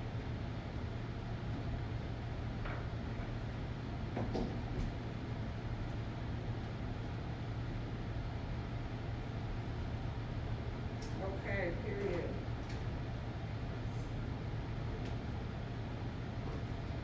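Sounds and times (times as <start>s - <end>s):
steady low hum: 0.0s - 17.0s
objects knocking on a desk: 4.2s - 4.9s.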